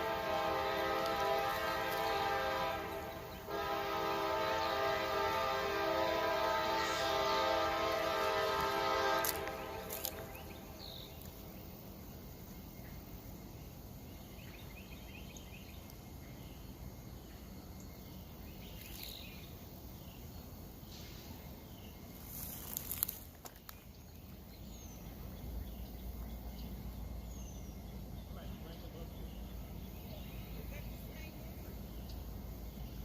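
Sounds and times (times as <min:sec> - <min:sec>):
locomotive air horn chord: 0:00.0 - 0:10.8.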